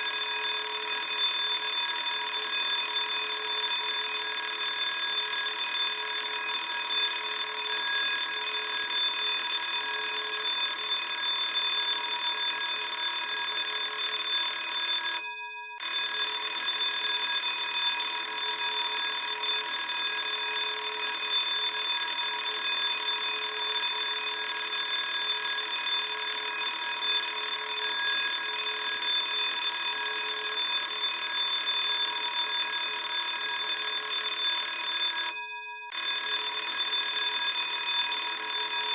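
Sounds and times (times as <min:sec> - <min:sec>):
school bell ringing: 0:06.8 - 0:10.7, 0:33.7 - 0:38.9.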